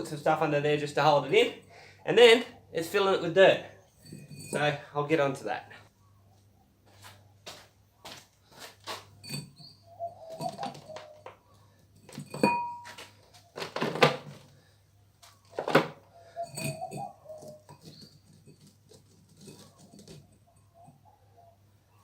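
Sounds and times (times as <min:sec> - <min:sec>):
short metallic ring: 0:04.0 - 0:04.8, 0:09.2 - 0:09.9, 0:12.1 - 0:13.1, 0:16.4 - 0:17.7
bird cooing: 0:09.8 - 0:11.7, 0:16.1 - 0:18.2, 0:19.7 - 0:22.0.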